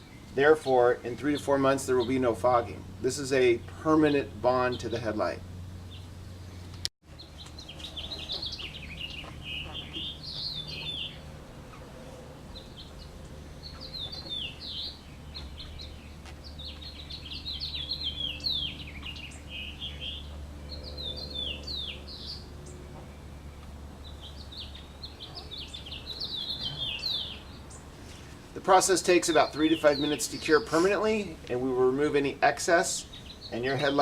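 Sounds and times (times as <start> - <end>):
steady low hum: 0.0 - 33.8
songbird chirping: 0.0 - 34.0.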